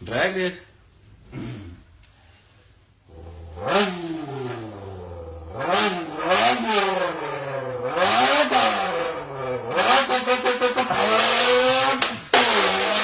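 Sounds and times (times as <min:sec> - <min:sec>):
man imitating engine revs: 0:03.1 - 0:13.0.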